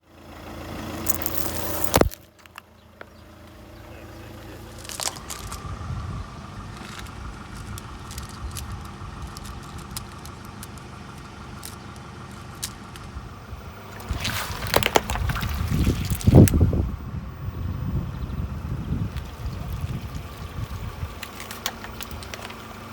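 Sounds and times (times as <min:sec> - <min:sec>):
car engine running: 0:00.0 - 0:22.9
tyre crushing objects: 0:01.0 - 0:02.5, 0:13.8 - 0:16.6.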